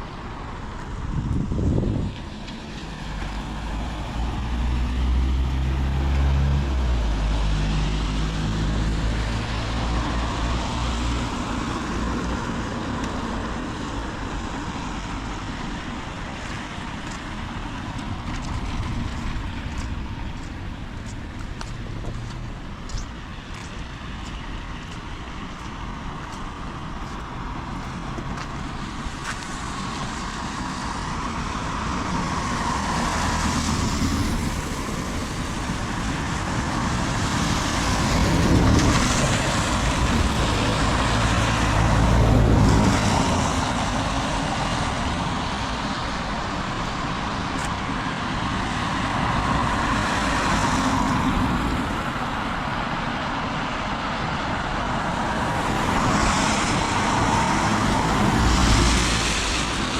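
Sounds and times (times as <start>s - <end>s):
heavy rain: 26.9s - 59.9s
tyre hiss on wet road: 55.0s - 59.9s.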